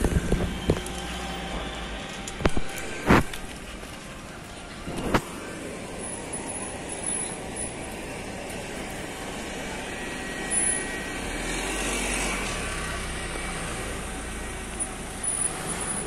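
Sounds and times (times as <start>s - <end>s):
city street traffic: 0.0s - 16.0s
vehicle passing close by: 10.9s - 16.0s.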